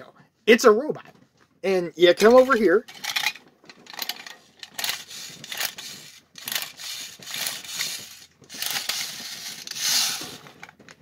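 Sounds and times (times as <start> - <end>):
tin toy robot rubbing and scraping: 2.2 - 10.7.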